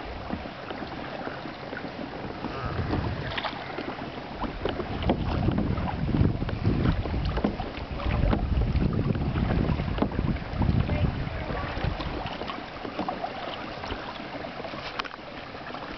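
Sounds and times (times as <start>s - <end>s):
rushing splashing river water: 0.0s - 15.9s
wind buffeting microphone: 1.8s - 12.5s.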